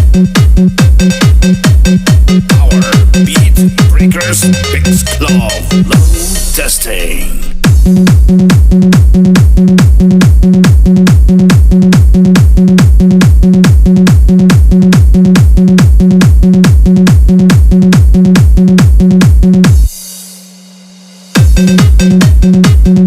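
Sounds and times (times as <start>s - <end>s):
deep bass kick hits: 7.4s - 16.4s.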